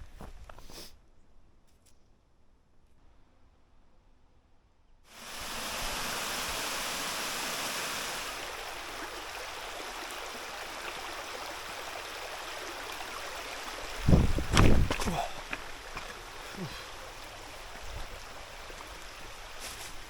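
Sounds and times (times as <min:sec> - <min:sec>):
stream water rushing: 0:05.1 - 0:20.0.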